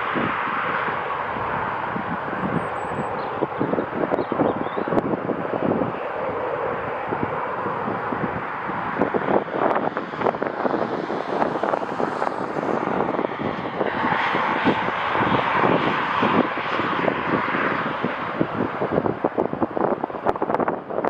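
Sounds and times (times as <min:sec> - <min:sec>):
jet engines passing: 0:00.0 - 0:21.0
wind buffeting microphone: 0:00.0 - 0:21.0.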